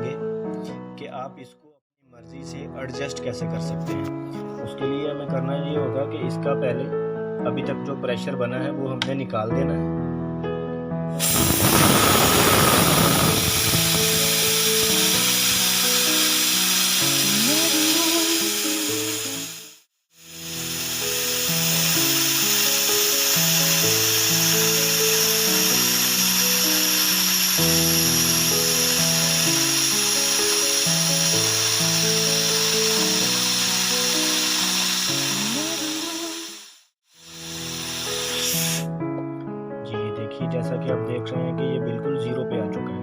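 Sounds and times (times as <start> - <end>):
background music: 2.2 - 11.2
compressed air hissing: 11.2 - 38.9.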